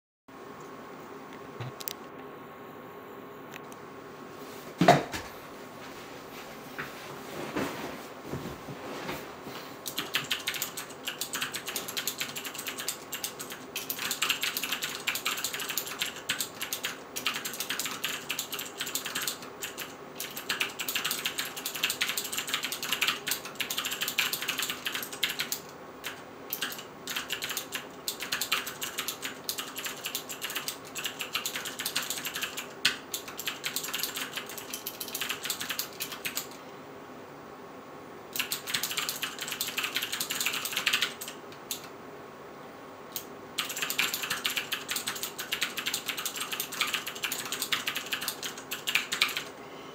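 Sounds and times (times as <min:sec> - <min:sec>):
mechanical keyboard typing: 0:09.8 - 0:36.6, 0:38.4 - 0:41.9, 0:43.2 - 0:49.5.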